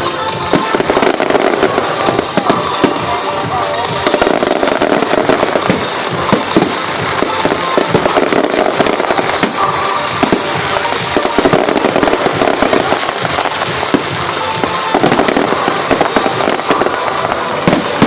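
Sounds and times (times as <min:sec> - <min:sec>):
fireworks bangs and crackles: 0:00.0 - 0:18.0
music playing: 0:00.0 - 0:18.0.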